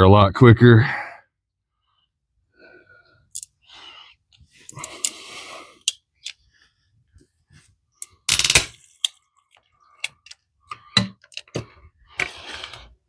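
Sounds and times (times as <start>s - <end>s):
pipe cutter clicking and scraping: 8.8s - 12.9s.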